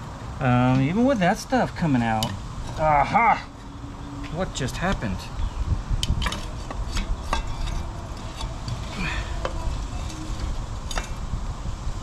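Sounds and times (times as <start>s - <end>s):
steady low rumble: 0.0s - 12.0s
metal parts clinking: 6.0s - 11.2s.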